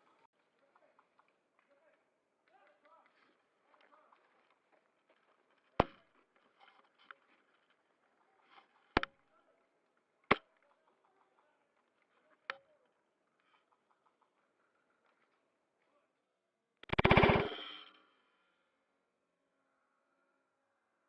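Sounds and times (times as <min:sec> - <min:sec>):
airsoft rifle shots: 0:16.8 - 0:17.8.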